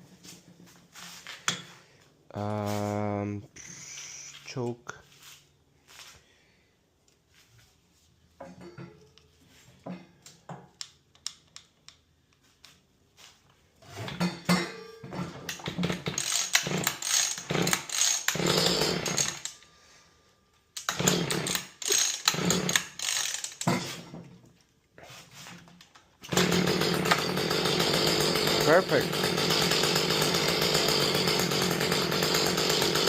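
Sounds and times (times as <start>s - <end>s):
string trimmer engine running rough: 15.6s - 19.5s, 21.0s - 23.0s, 26.3s - 33.0s
starter cord pulls: 25.9s - 33.0s.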